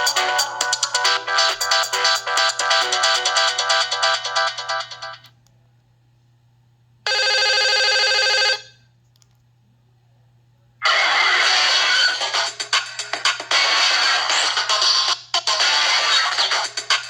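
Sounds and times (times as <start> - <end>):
mobile phone ringtones: 7.1 - 8.7.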